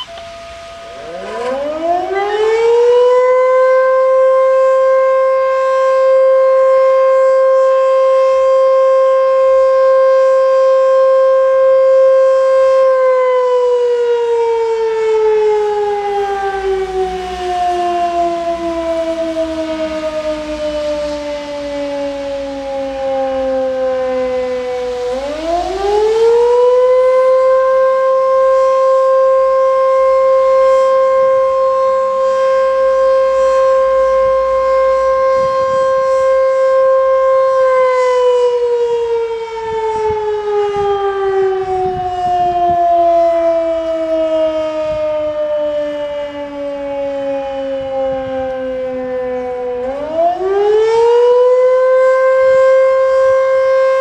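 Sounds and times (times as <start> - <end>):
electric siren winding: 0.0 - 3.9.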